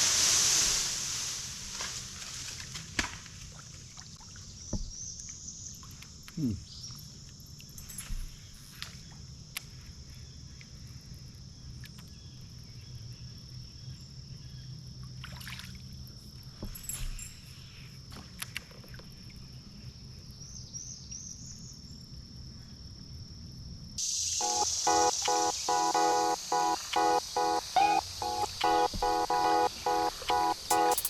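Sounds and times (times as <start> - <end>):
small water splashes: 15.1 - 15.9
high-pitched insect drone: 24.0 - 31.0.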